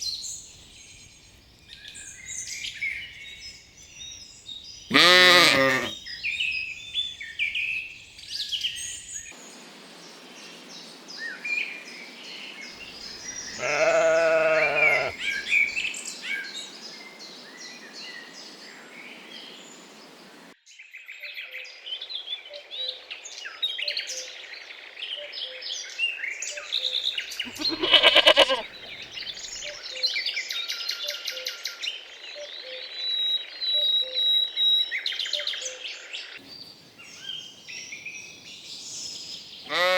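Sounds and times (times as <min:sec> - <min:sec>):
songbirds chirping: 0:00.0 - 0:20.6, 0:24.3 - 0:31.2, 0:34.9 - 0:39.9
lambs bleating: 0:04.9 - 0:06.0, 0:13.5 - 0:15.3, 0:27.5 - 0:29.0, 0:39.7 - 0:39.9.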